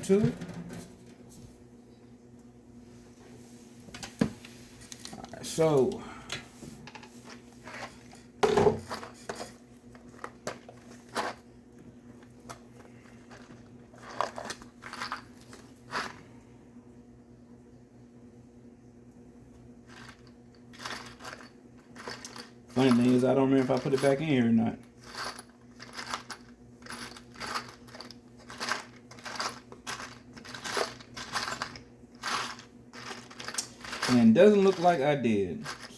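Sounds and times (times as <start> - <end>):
tools and hardware clattering: 0.0 - 1.2, 6.9 - 11.4, 13.2 - 16.0, 25.0 - 35.9
steady low hum: 0.0 - 35.9
small metal parts clinking: 19.9 - 24.3, 24.9 - 35.9.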